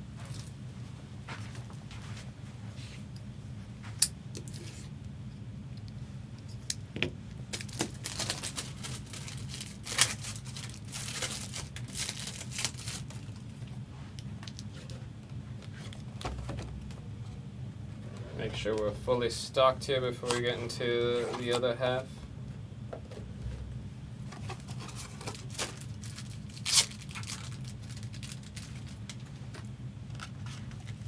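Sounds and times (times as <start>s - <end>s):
steady low hum: 0.0s - 31.0s
plastic rustling and crinkling: 7.5s - 17.0s, 24.3s - 31.0s.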